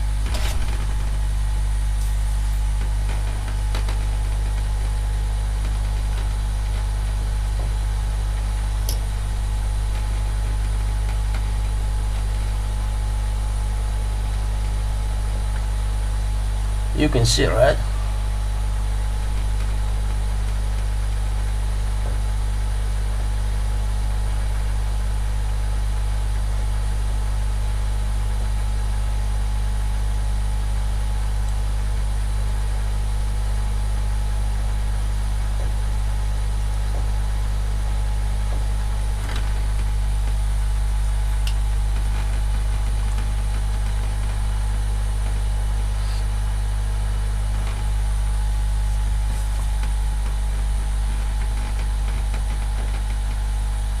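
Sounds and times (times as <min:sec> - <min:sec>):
hot air blower running: 0:44.5 - 0:51.2.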